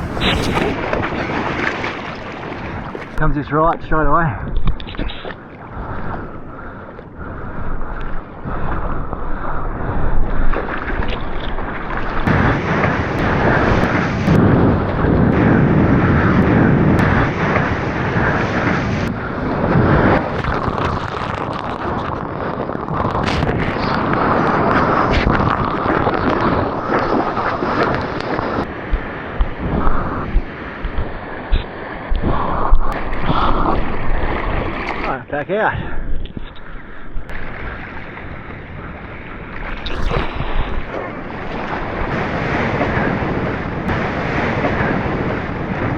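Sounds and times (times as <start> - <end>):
short low thumps: 0.0 - 0.8
water rushing around surfboard: 0.0 - 3.2, 4.6 - 35.2, 36.2 - 45.9
wind buffeting microphone: 0.0 - 4.9, 5.5 - 35.1, 35.7 - 45.9.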